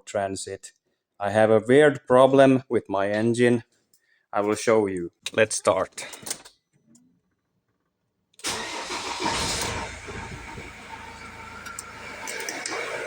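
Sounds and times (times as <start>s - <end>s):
van engine starting and idling: 8.4s - 13.0s.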